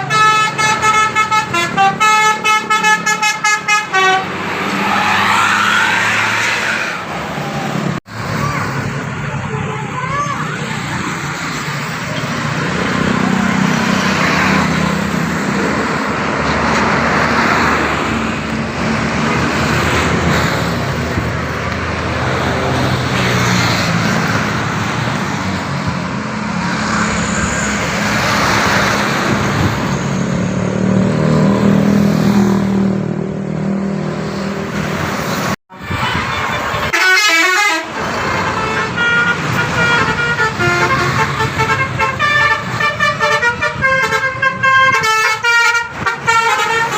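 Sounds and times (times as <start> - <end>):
vehicles passing: 0.0 - 46.9.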